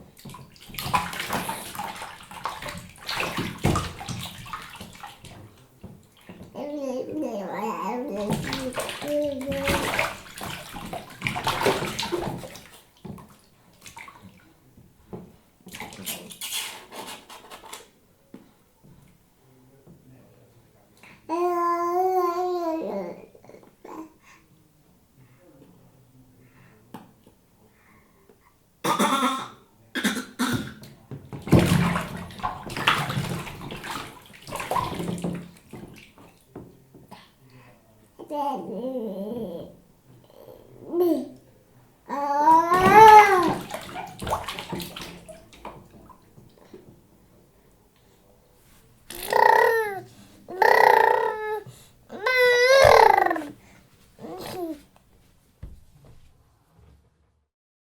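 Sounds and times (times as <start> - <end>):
baby splashing bath water: 0.0 - 18.0, 30.6 - 37.4, 42.1 - 47.1, 48.9 - 55.0.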